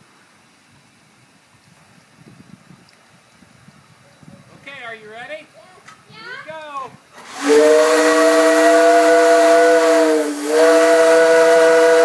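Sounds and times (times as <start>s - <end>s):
hiss of escaping steam: 7.1s - 12.0s
steam whistle blowing: 7.2s - 12.0s.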